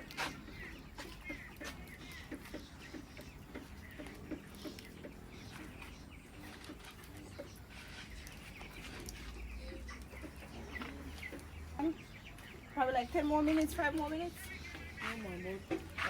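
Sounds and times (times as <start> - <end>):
bird chirps: 0.0 - 16.0.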